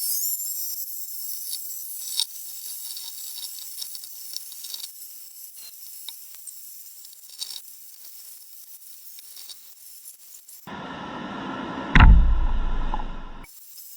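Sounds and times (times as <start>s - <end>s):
small clicks and crackles: 1.4s - 10.4s.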